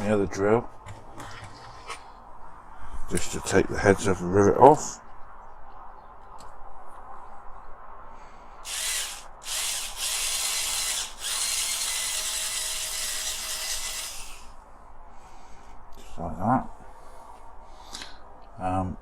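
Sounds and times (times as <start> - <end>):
power drill grinding metal: 8.6 - 14.5.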